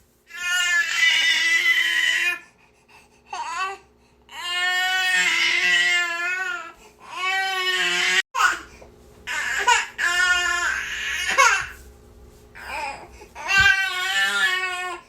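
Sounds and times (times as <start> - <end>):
infant crying: 3.3 - 8.6, 9.3 - 11.8, 12.6 - 15.0.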